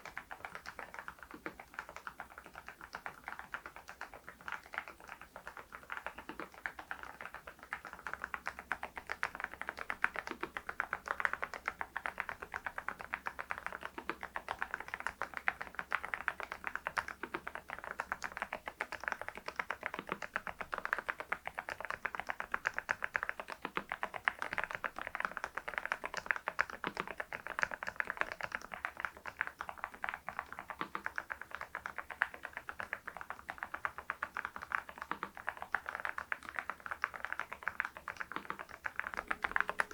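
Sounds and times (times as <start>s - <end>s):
mechanical keyboard typing: 34.5s - 39.9s.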